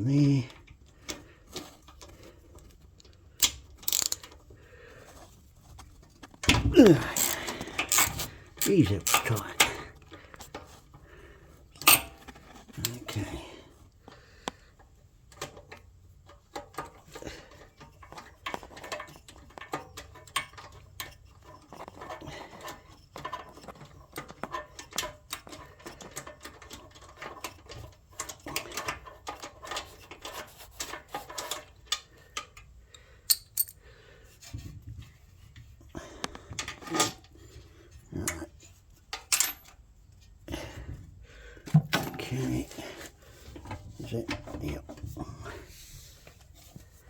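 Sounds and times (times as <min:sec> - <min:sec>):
metal parts and tools clinking: 0:03.4 - 0:04.4, 0:06.4 - 0:09.9, 0:11.8 - 0:13.3, 0:33.3 - 0:33.8, 0:39.0 - 0:39.8, 0:41.7 - 0:43.0.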